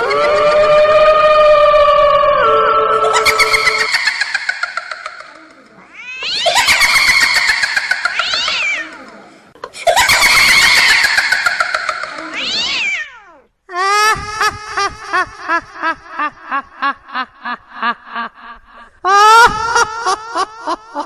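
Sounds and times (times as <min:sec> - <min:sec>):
wailing cat-like yowl: 0:00.0 - 0:03.9, 0:05.9 - 0:06.9, 0:12.3 - 0:13.5.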